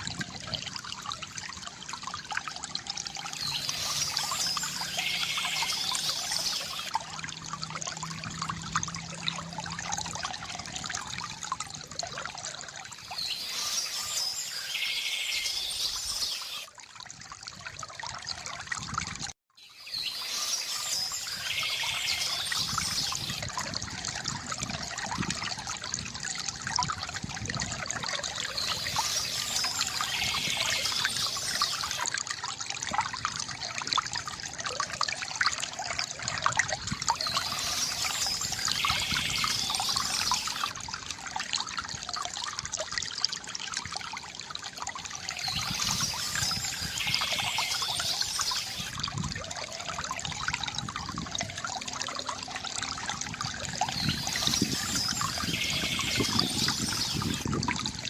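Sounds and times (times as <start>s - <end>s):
water trickling from fountain spout: 0.0s - 58.0s
birds chirping: 3.3s - 6.9s, 19.7s - 23.4s, 37.2s - 40.7s, 45.3s - 48.9s, 53.9s - 57.4s.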